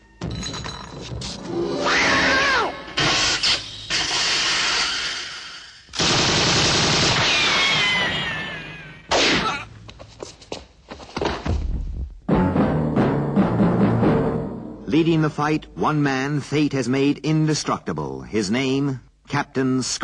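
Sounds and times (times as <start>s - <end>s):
gunfire bursts: 6.0s - 7.7s.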